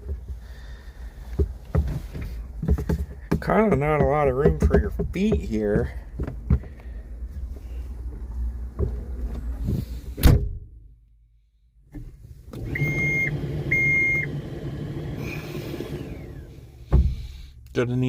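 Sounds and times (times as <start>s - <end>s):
fan hum: 12.2s - 18.0s.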